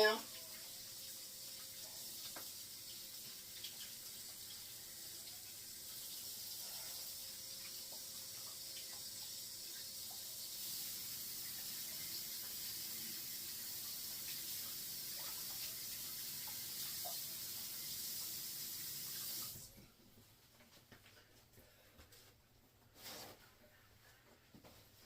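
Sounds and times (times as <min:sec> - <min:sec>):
tap water running into sink: 0:00.0 - 0:06.5, 0:07.3 - 0:19.7.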